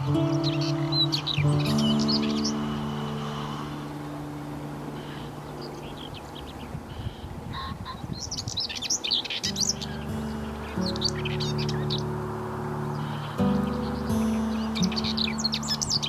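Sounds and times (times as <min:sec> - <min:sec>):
soft background music: 0:00.0 - 0:06.1, 0:09.5 - 0:16.0
small songbird chirping: 0:00.0 - 0:16.0.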